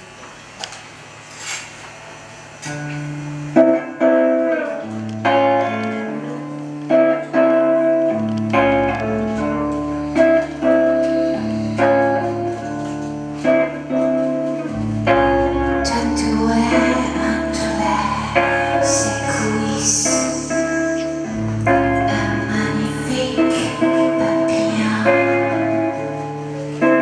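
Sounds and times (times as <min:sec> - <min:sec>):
guitar chords: 0:02.0 - 0:27.0
bass line: 0:08.1 - 0:14.0, 0:14.6 - 0:27.0.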